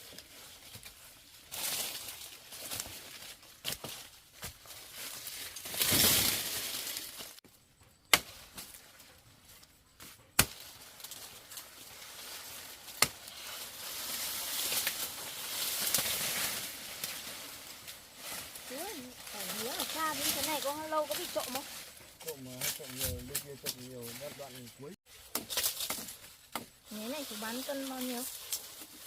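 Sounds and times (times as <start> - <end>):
rustling leaves and stems: 0.0 - 29.0
chopping strikes on plant stalks: 3.6 - 4.8, 8.0 - 8.8, 10.0 - 11.6, 12.5 - 13.6, 14.3 - 17.2, 25.2 - 26.8.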